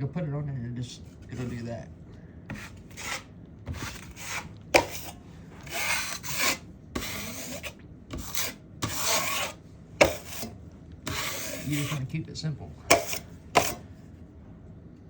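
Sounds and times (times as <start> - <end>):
drywall knife scraping compound: 2.5 - 12.2, 12.8 - 13.9
knife blade knocking: 12.9 - 13.8.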